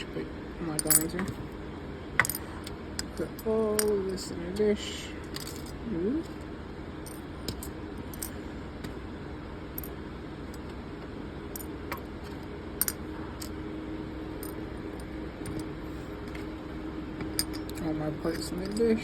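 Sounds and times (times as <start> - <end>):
steady low hum: 0.0 - 19.0
metal parts clinking in a dish: 0.8 - 1.4, 3.0 - 4.0, 5.3 - 5.8, 7.1 - 8.4, 12.8 - 13.5, 17.4 - 19.0.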